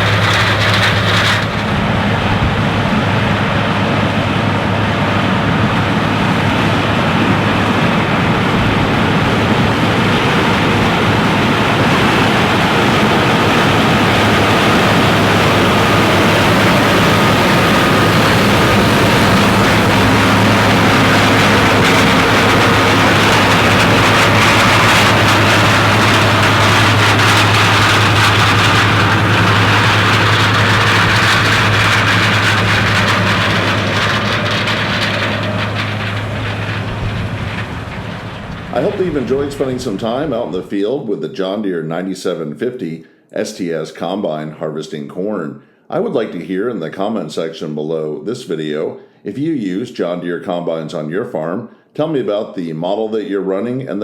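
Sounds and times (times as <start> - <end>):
combine harvester engine droning: 0.0 - 40.7.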